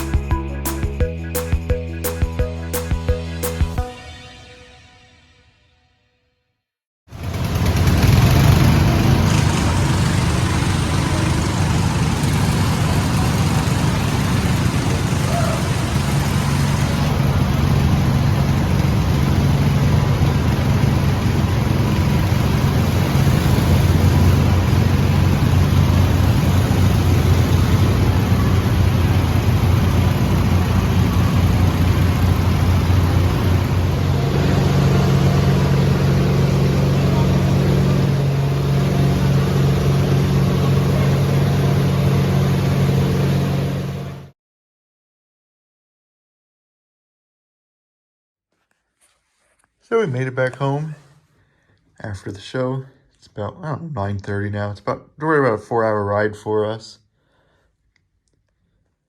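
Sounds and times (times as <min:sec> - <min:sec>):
road noise: 0:07.1 - 0:44.3
vehicle engine hum: 0:07.1 - 0:44.3.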